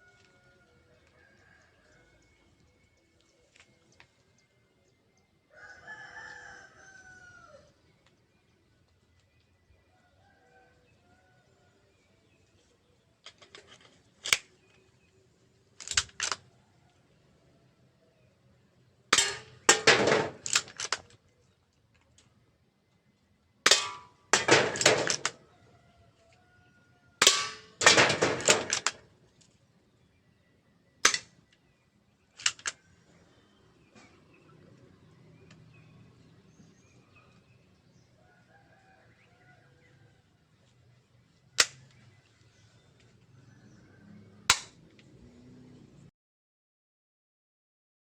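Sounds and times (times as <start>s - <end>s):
airsoft pistol clacks: 15.8s - 16.4s, 19.2s - 21.2s, 31.0s - 31.4s, 32.4s - 32.8s.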